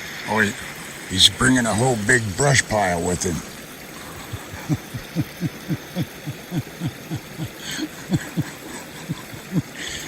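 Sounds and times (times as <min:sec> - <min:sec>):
water gurgling and trickling: 0:00.0 - 0:10.0.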